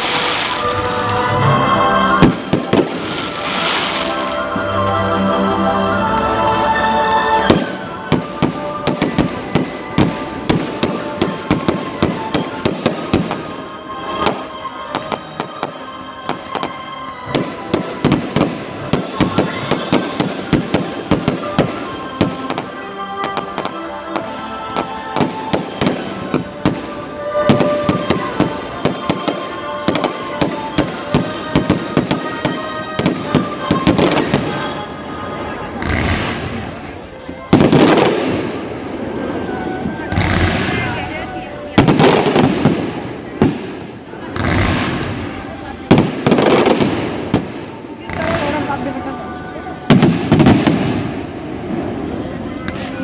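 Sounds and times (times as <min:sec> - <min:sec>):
fireworks bangs and crackles: 0:00.0 - 0:05.2, 0:06.0 - 0:53.0
music playing: 0:00.0 - 0:53.0.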